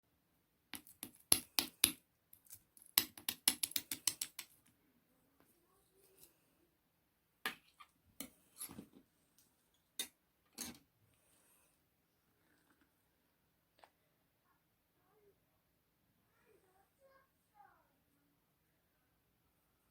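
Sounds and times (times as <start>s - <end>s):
small hard objects clicking: 0.8s - 4.6s.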